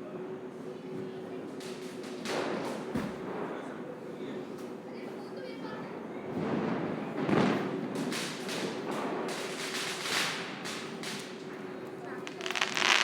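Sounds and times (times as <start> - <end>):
firecrackers hissing and crackling: 6.4 - 13.0
firecracker boom: 12.3 - 13.0.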